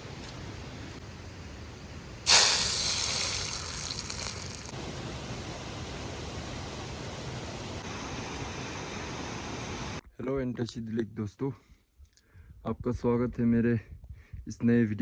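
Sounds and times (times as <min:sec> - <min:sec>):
faint steady rushing: 0:00.0 - 0:10.0
loud hiss: 0:02.2 - 0:10.0.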